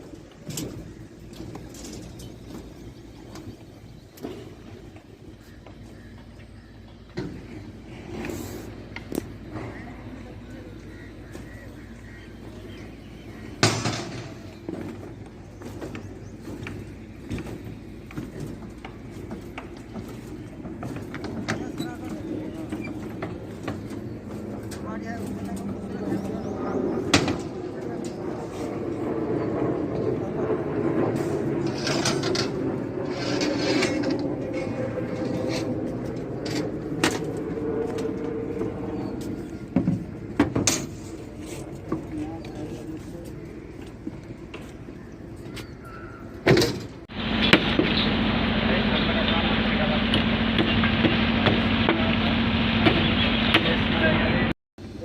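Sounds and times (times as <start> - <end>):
building site din: 0.0 - 55.0
steady low hum: 0.0 - 55.0.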